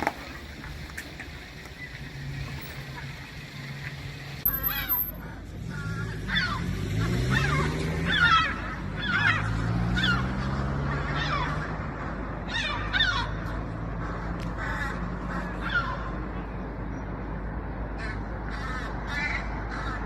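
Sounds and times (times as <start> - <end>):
gulls squawking: 4.5 - 16.3, 17.9 - 20.0.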